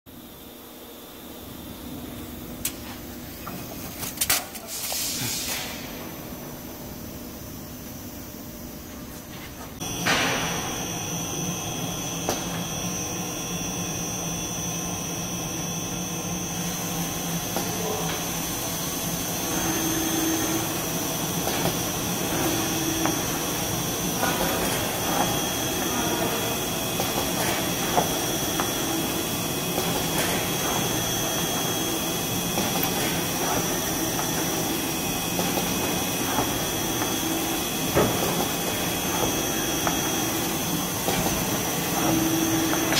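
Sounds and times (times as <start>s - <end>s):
cutting machine whirring and whining: 9.8s - 42.9s.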